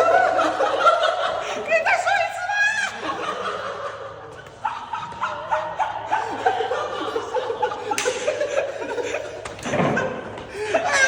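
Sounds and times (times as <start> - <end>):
high-pitched laughter: 10.0 - 11.0.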